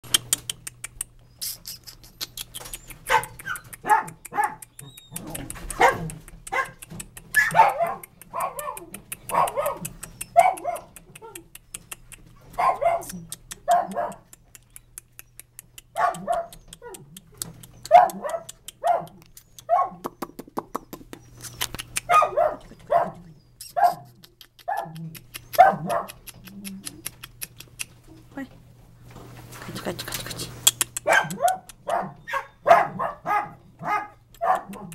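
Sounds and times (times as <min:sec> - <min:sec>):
dog barking sharply: 0:03.0 - 0:11.0, 0:12.6 - 0:14.3, 0:16.0 - 0:17.0, 0:17.9 - 0:20.0, 0:22.0 - 0:24.1, 0:25.6 - 0:26.2, 0:31.0 - 0:34.9.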